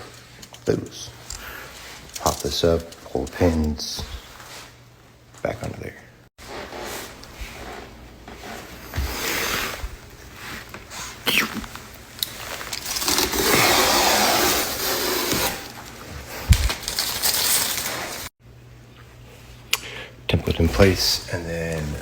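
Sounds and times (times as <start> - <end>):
wooden strips scraping and sliding: 12.6 - 18.3.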